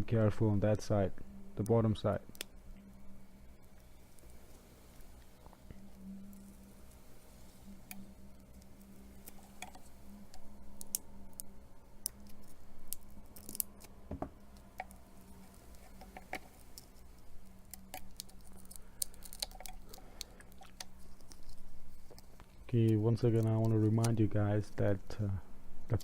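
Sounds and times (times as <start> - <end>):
steady low hum: 0.0 - 26.0
pry tool clicking and scraping: 17.7 - 22.6.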